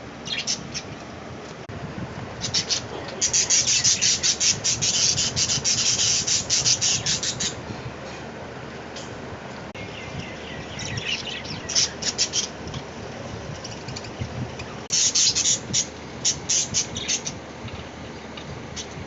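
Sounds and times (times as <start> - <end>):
parrots chirping: 0.2 - 0.9, 2.4 - 7.6, 9.8 - 12.6, 14.9 - 17.4.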